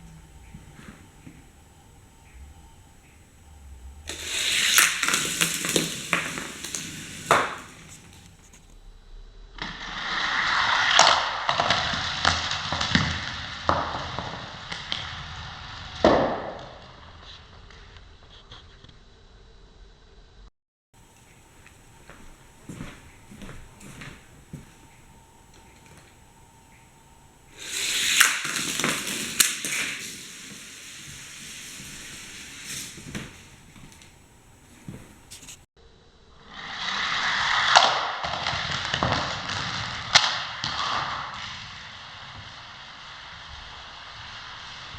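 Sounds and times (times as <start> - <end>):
toy car rolling on plastic track: 4.1 - 8.7, 9.9 - 16.3, 27.5 - 34.2
sharp clacks: 21.2 - 35.7.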